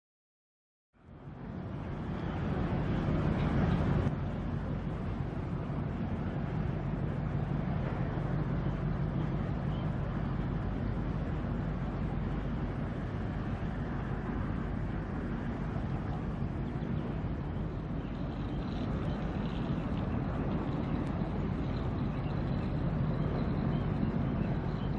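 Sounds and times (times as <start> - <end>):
ship engine rumbling: 1.1 - 24.9.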